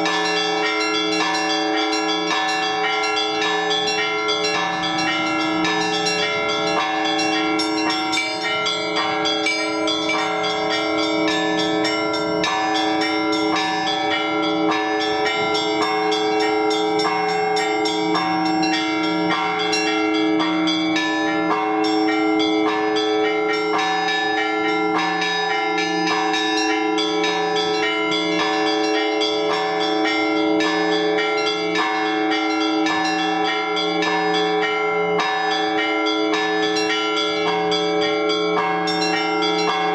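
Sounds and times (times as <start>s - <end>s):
deep bells ringing: 0.0s - 39.9s
small bells struck rapidly: 0.0s - 39.9s.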